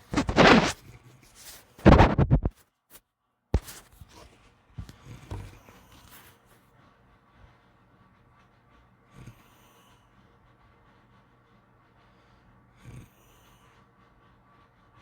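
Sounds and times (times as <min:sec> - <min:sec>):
dog making harsh bursts: 0:00.0 - 0:00.8, 0:01.4 - 0:02.5.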